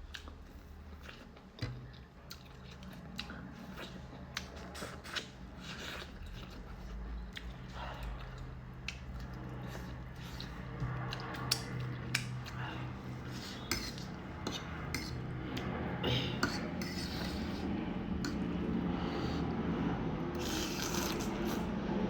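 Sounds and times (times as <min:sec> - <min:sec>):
steady low hum: 0:00.0 - 0:22.0
cutlery clinking against a bowl: 0:13.6 - 0:15.2, 0:16.4 - 0:17.4.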